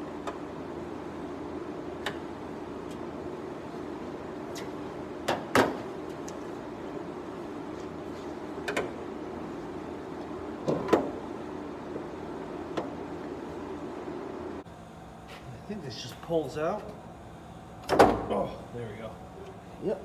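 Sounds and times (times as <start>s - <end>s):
steady hum: 5.9s - 20.0s.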